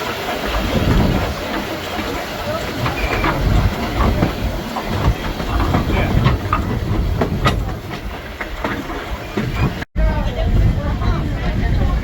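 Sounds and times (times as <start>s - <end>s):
wheels and couplings clicking: 0.0s - 9.9s
train car rumbling on track: 0.0s - 12.0s
high squeaks: 2.7s - 6.7s.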